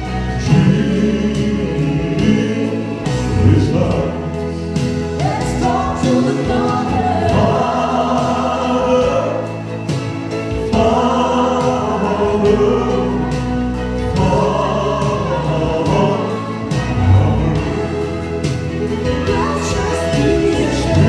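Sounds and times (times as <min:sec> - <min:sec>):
choir singing gospel chords: 0:00.0 - 0:21.0.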